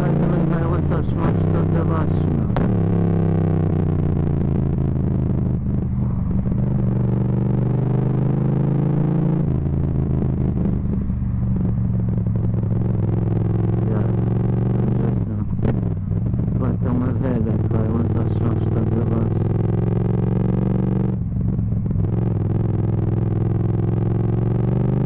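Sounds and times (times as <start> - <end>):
loud motorcycle engine: 0.0 - 25.0.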